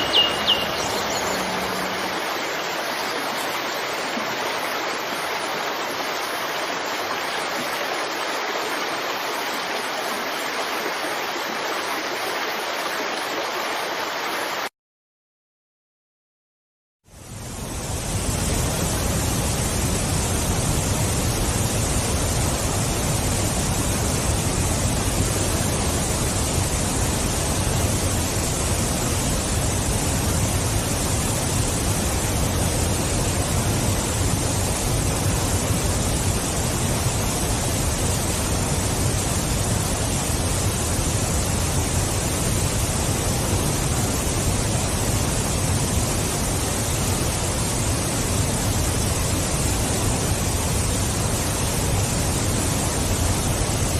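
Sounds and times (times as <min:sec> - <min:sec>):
waterfall rushing: 0:00.0 - 0:14.7.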